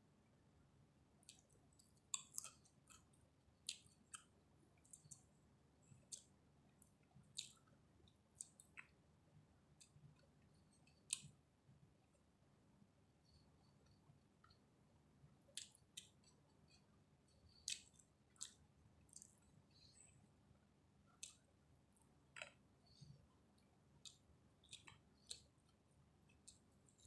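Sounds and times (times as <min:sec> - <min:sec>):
faint low hum: 0:00.0 - 0:27.0
wet chewing clicks: 0:01.2 - 0:05.3, 0:05.9 - 0:09.0, 0:15.5 - 0:16.9, 0:17.5 - 0:20.1, 0:21.1 - 0:21.5, 0:22.3 - 0:23.1, 0:24.0 - 0:27.0.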